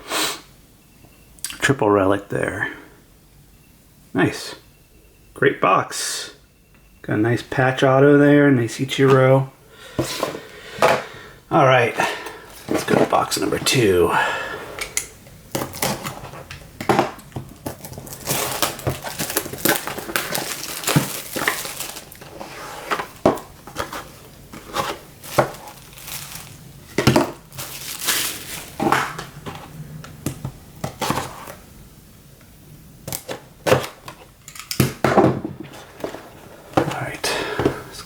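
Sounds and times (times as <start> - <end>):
cardboard packaging handling: 12.0 - 14.1, 15.5 - 31.7, 33.0 - 38.0
plastic wrap crinkling and tearing: 15.6 - 29.8.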